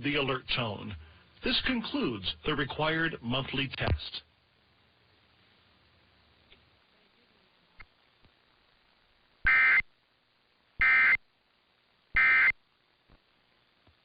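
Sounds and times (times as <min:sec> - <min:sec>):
digital data tone bursts: 0:09.5 - 0:09.8, 0:10.8 - 0:11.2, 0:12.2 - 0:12.6.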